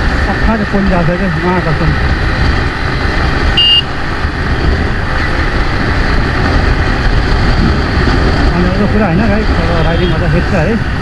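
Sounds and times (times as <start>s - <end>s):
wind and motorcycle engine rumble: 0.0s - 11.0s
vehicle horn beep: 3.6s - 3.9s, 9.8s - 10.2s.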